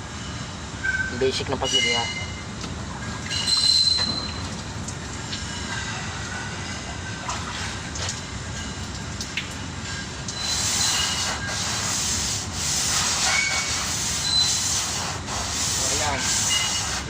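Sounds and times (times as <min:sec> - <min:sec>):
sandpaper rasping by hand: 0:10.4 - 0:17.0.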